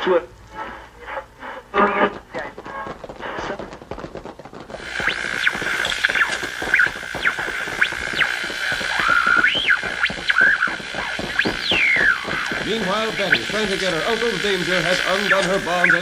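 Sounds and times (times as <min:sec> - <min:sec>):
radio static crackling: 0:00.0 - 0:16.0
steady whistle: 0:04.9 - 0:13.6, 0:15.1 - 0:16.0
howling whistles sweeping in pitch: 0:05.0 - 0:12.6.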